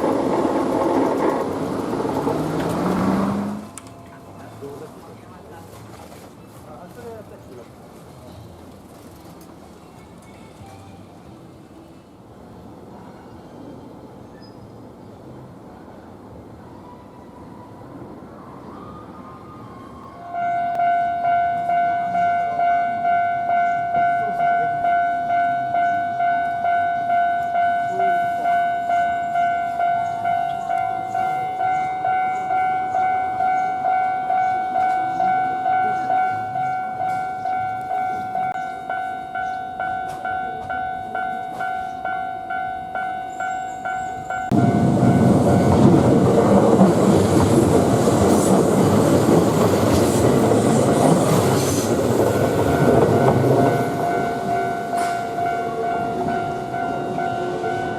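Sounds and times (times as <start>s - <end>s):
electric train passing: 0.0s - 5.7s, 7.0s - 57.9s
level crossing warning bell: 2.2s - 4.8s, 20.2s - 46.8s, 51.9s - 57.9s.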